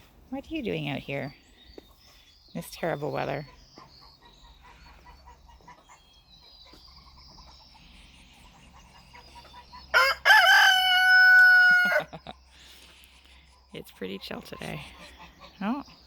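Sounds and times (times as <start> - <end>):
rooster crowing: 9.9 - 12.2.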